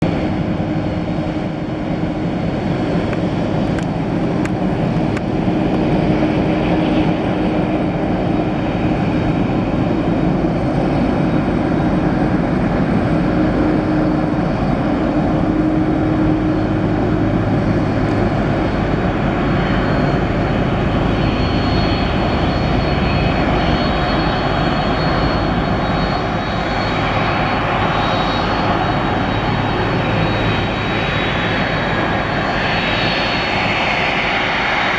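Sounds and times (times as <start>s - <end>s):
jet engines running: 0.0s - 34.9s
faint high whine: 13.4s - 34.9s.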